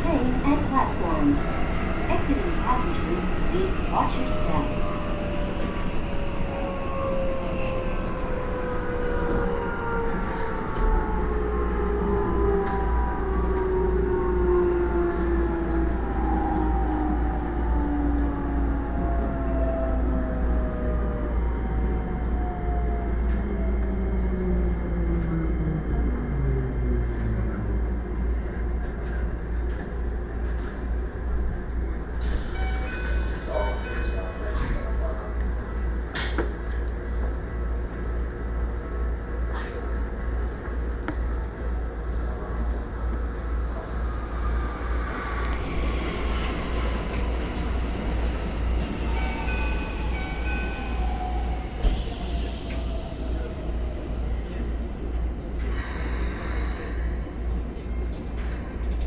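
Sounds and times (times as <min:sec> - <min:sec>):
train wheels rumbling on rail: 0:00.0 - 0:59.0
deep low drone: 0:06.5 - 0:30.4.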